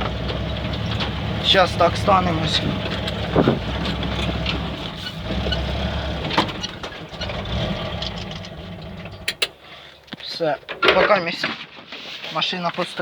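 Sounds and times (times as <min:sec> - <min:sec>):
engine running at low revs: 0:00.0 - 0:10.3
knocks and clicks: 0:00.0 - 0:11.0.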